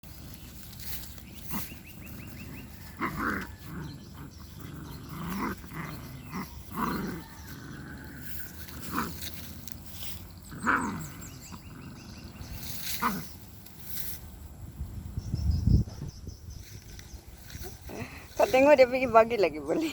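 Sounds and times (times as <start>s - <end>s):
puppy growling and yelping: 1.3s - 13.6s.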